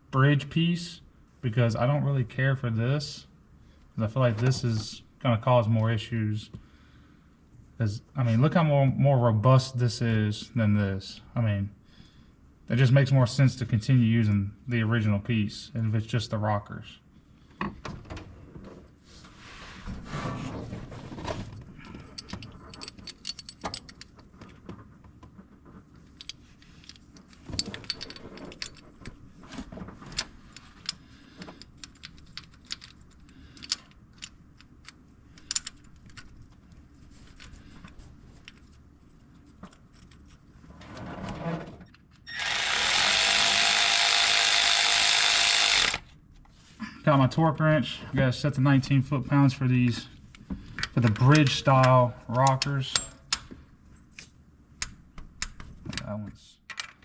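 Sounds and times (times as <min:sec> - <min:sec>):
metal tools clinking and tapping: 0:22.0 - 0:24.2.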